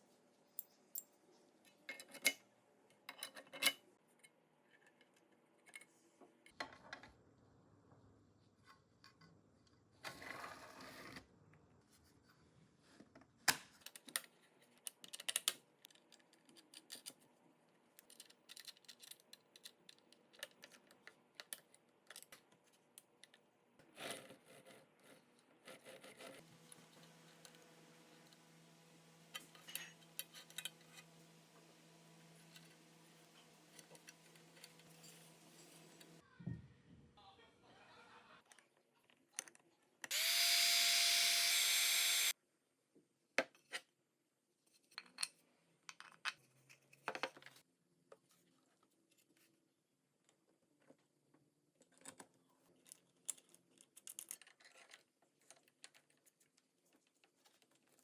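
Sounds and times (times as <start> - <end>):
tools and metal parts clicking: 18.0 - 22.4, 52.8 - 56.2.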